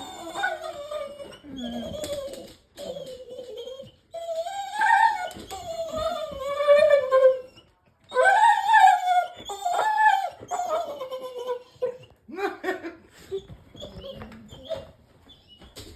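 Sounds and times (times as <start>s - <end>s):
puppy howling: 0.0s - 7.5s, 8.1s - 11.9s
puppy whimpering and yelping: 0.0s - 12.1s, 13.3s - 15.6s.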